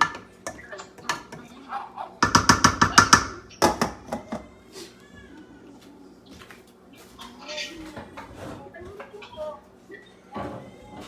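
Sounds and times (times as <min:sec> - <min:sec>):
kitchenware clattering: 0:00.0 - 0:04.6, 0:10.3 - 0:11.0.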